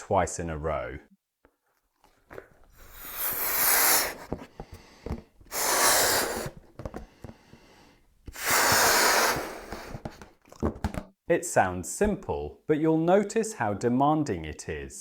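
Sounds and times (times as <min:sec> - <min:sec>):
person blowing into balloon: 0:02.3 - 0:11.0.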